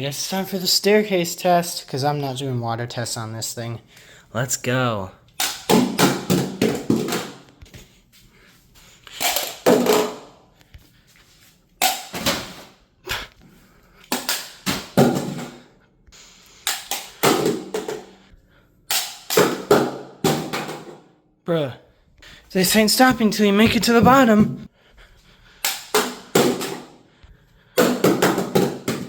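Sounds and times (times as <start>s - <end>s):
plastic object clattering down stairs: 5.4s - 7.6s, 9.2s - 10.4s, 14.1s - 15.6s, 16.7s - 18.1s, 27.8s - 29.0s.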